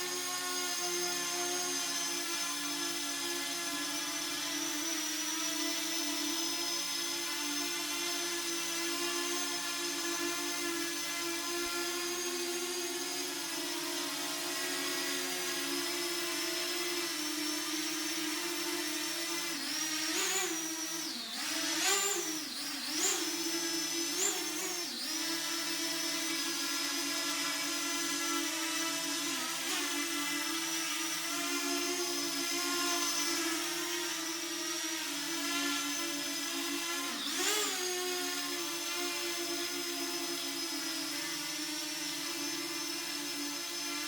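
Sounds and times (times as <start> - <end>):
drone propellers whining: 18.0 - 25.4.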